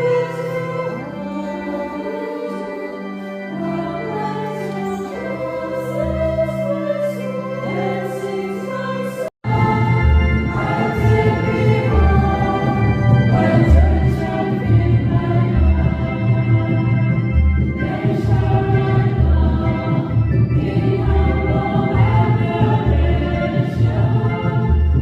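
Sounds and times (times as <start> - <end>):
choir singing a hymn: 0.0 - 25.0
instrumental accompaniment: 0.0 - 25.0.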